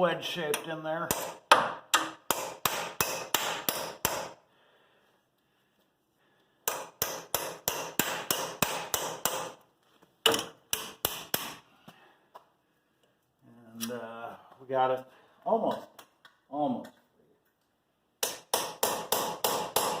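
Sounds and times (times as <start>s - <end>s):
hammer striking chisel: 0.5s - 4.4s, 6.6s - 9.6s, 10.2s - 11.6s, 18.2s - 20.0s.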